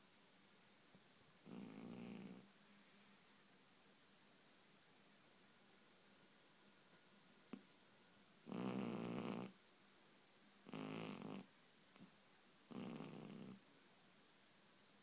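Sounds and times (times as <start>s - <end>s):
cat snoring: 1.4s - 2.5s, 8.5s - 9.6s, 10.6s - 11.5s, 12.7s - 13.6s.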